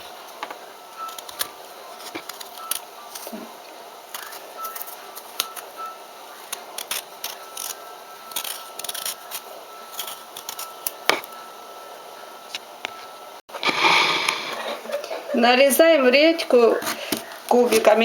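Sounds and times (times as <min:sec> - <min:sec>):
knife scraping a radish: 0:06.4 - 0:10.8.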